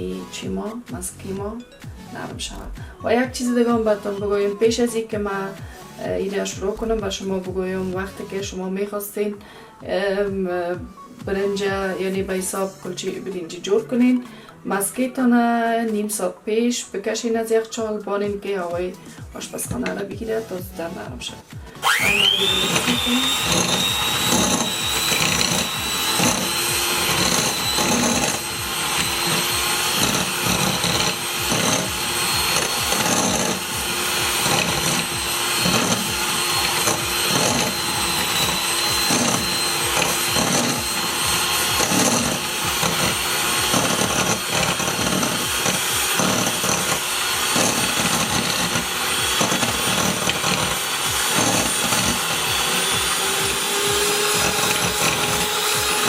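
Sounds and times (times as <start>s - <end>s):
hand mixer motor whining: 1.1s - 8.5s, 18.9s - 20.7s, 21.5s - 56.0s
beaters knocking and scraping bowl: 21.8s - 56.0s.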